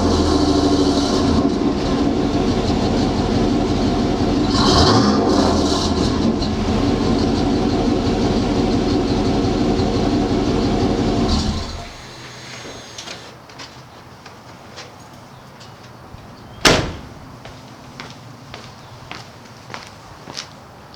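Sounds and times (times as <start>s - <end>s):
engine exhaust note: 0.0s - 13.3s.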